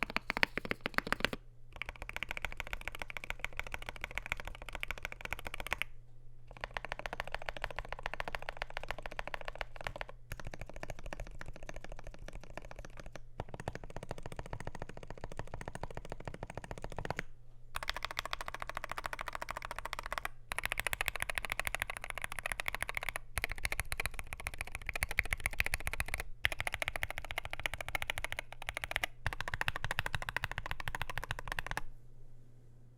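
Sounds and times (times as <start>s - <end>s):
fast keyboard typing: 0.0s - 5.9s, 6.5s - 31.9s
steady low hum: 16.1s - 32.9s.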